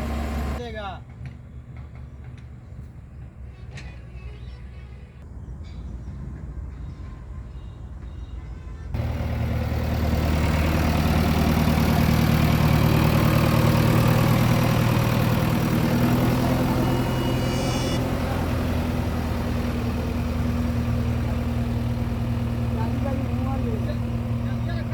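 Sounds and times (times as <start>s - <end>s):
diesel engine running: 0.0s - 0.6s, 9.0s - 24.9s
brief high-pitched sound: 16.8s - 18.1s.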